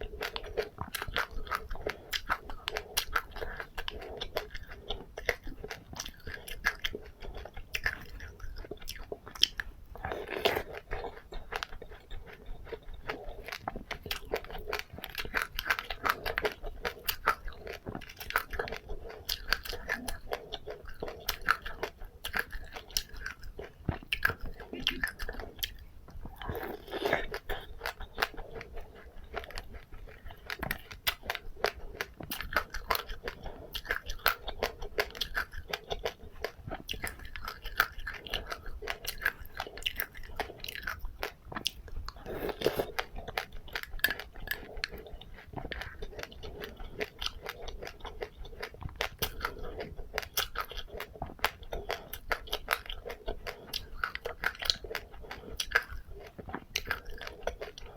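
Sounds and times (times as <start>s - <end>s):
chewing crunchy seeds: 0.0s - 57.9s.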